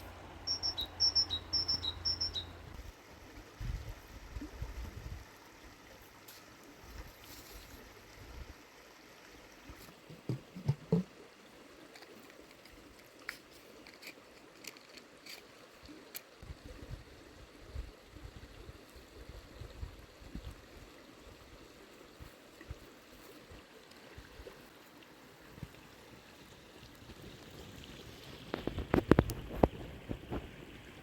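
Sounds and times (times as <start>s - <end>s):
high two-note chirp: 0.5s - 2.6s.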